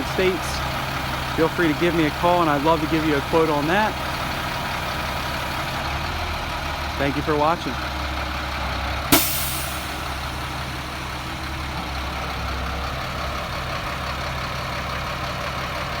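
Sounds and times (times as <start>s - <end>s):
diesel engine idling: 0.0s - 16.0s
burst of hissing air: 9.2s - 10.8s.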